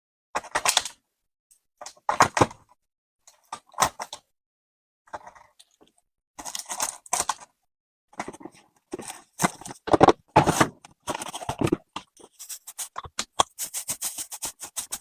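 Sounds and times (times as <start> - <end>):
hands handling packaging: 8.2 - 15.0.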